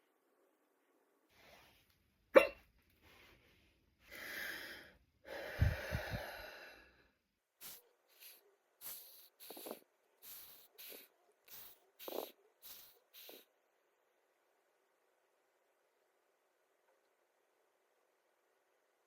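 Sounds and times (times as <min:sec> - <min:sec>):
sharp hiccup: 0:02.4 - 0:02.6
noisy breathing: 0:04.0 - 0:13.5.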